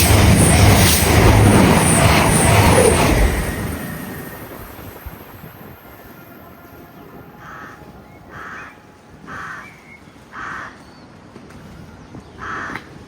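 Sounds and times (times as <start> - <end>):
crow cawing: 7.4 - 8.7, 9.3 - 9.7, 10.3 - 10.8, 12.4 - 12.8.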